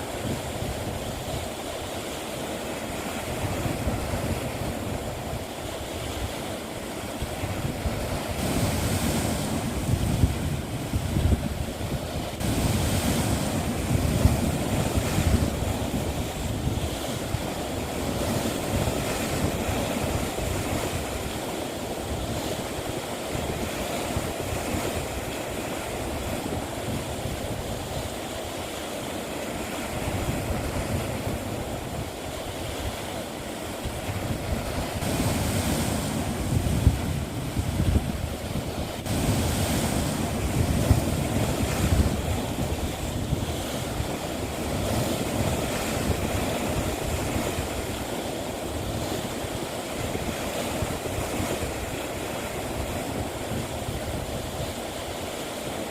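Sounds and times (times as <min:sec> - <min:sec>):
sea waves breaking on shore: 0:00.0 - 0:55.9
wind noise on microphone: 0:00.0 - 0:55.9.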